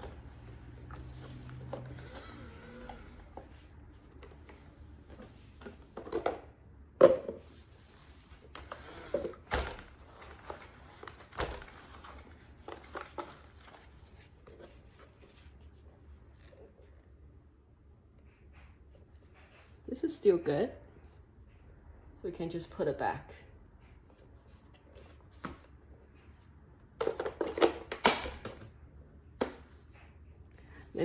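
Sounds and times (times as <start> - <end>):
plastic parts clicking and knocking: 27.0 - 28.7.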